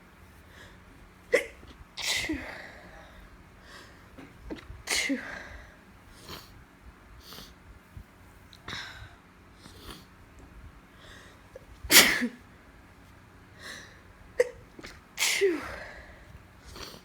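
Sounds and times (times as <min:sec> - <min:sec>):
woman sneezing: 0:04.9 - 0:05.4, 0:11.9 - 0:12.4, 0:15.2 - 0:16.0.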